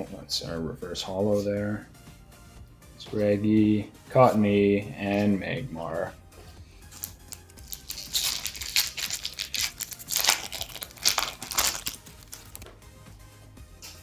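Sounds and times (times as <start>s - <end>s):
foil wrapper tearing and crinkling: 6.9s - 12.7s.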